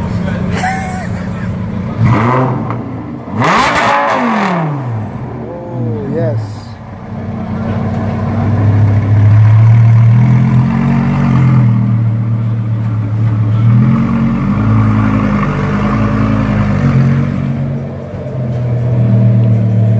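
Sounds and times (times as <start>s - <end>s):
car engine idling loudly: 0.0s - 3.7s, 4.6s - 11.0s, 11.6s - 16.8s.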